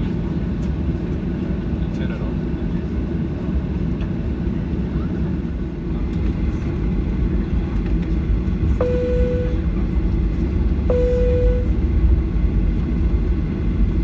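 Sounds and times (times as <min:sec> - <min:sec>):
airplane cabin rumble: 0:00.0 - 0:14.0
short cabin chime tone: 0:08.8 - 0:09.6, 0:10.9 - 0:11.8.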